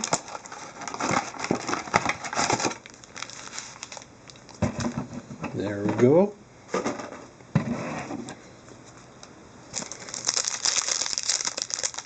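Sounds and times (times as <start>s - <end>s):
foil wrapper crinkling: 0.0s - 4.6s, 9.7s - 12.0s.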